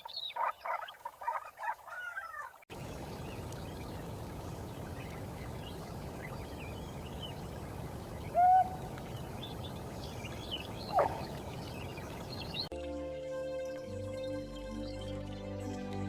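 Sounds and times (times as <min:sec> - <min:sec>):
bird calls: 0:00.0 - 0:12.7
small birds chirping: 0:00.0 - 0:12.7
steady hiss: 0:02.7 - 0:12.7.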